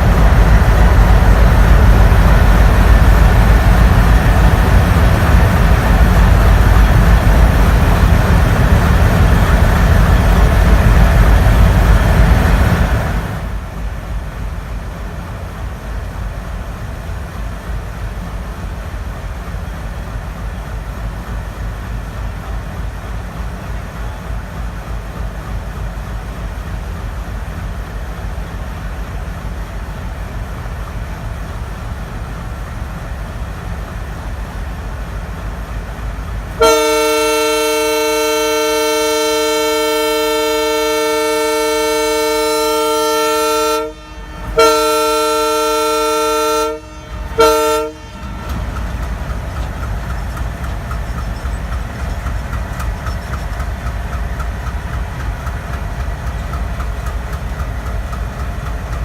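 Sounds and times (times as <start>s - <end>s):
diesel locomotive engines rumbling: 0.0s - 59.0s
locomotive horn blasts: 36.6s - 49.1s.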